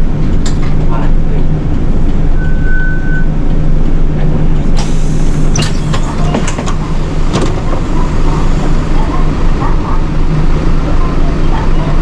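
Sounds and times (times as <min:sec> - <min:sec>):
bus engine hum: 0:03.4 - 0:12.0
sharp clicks and squeaks: 0:04.8 - 0:08.5.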